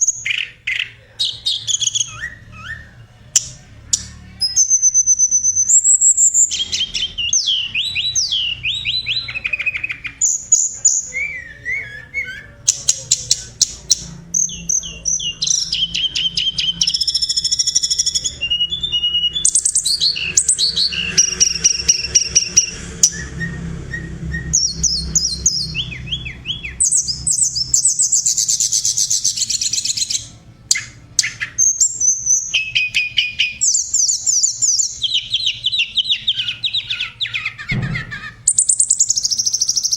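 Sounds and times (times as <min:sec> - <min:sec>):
songbird singing: 0:00.0 - 0:39.9.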